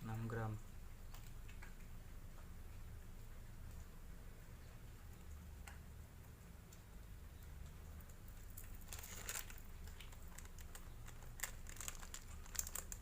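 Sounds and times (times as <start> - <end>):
faint low hum: 0.0 - 13.0
plastic packaging crinkling: 8.3 - 13.0.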